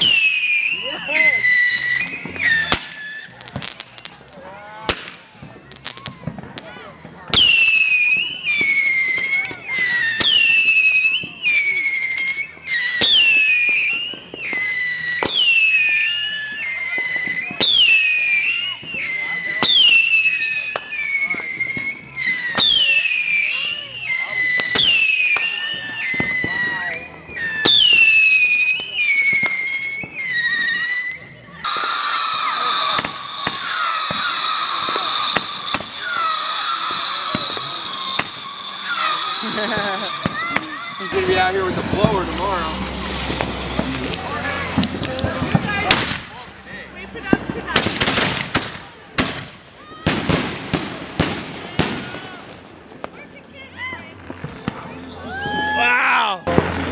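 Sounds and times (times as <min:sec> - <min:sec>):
fireworks whistles: 0:00.0 - 0:53.2, 0:53.8 - 0:56.9
fireworks cracks: 0:00.0 - 0:56.9
fireworks hissing spray: 0:31.6 - 0:49.6.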